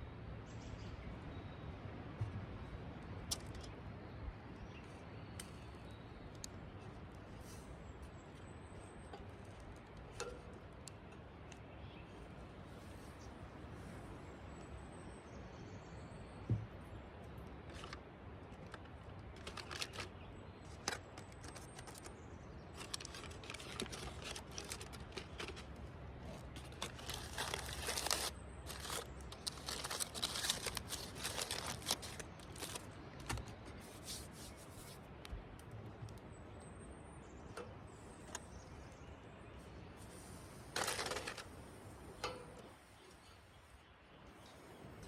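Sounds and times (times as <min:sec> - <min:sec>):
crackling and crinkling: 0:04.8 - 0:14.8, 0:17.4 - 0:36.5, 0:40.0 - 0:43.4.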